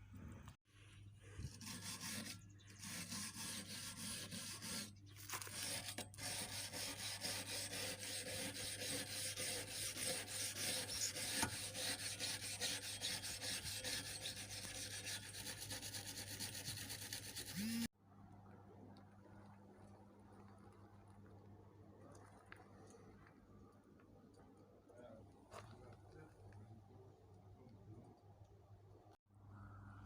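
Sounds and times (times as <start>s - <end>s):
brush scrubbing steel bar: 1.3s - 17.9s.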